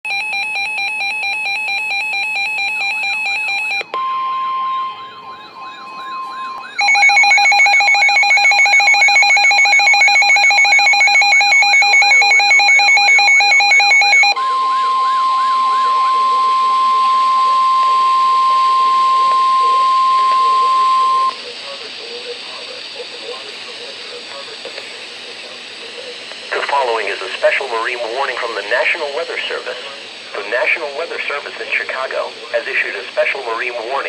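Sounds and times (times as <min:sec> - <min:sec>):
steady single-pitch alarm tone: 0:00.1 - 0:21.4
harsh buzzing alarm tone: 0:00.1 - 0:21.5
fast warbling siren: 0:04.0 - 0:21.3.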